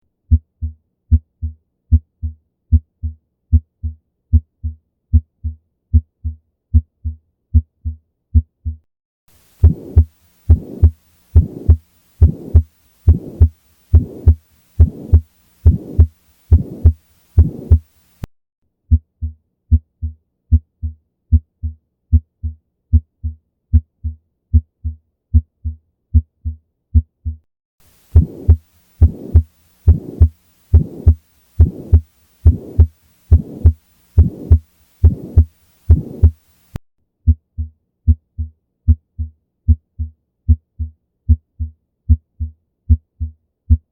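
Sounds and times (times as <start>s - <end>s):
clean heartbeats: 9.4s - 18.0s, 18.9s - 36.6s, 37.3s - 43.9s
heartbeat with harsh murmur: 9.4s - 18.2s, 18.9s - 43.9s.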